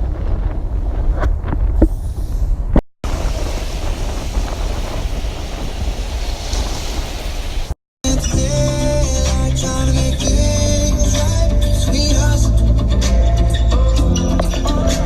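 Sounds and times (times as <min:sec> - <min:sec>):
wind buffeting microphone: 0:00.0 - 0:07.8
ocean surf: 0:03.0 - 0:07.8.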